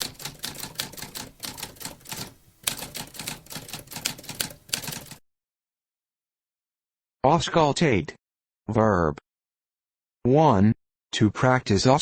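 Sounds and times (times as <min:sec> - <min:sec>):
typewriter keys clacking: 0:00.0 - 0:05.2.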